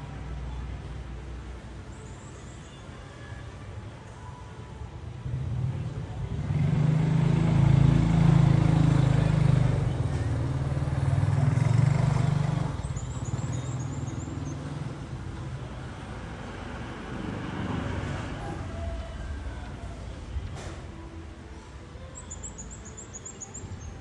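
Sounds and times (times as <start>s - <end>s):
vehicle engine passing by: 5.2s - 20.9s
bird chirping: 12.8s - 14.8s.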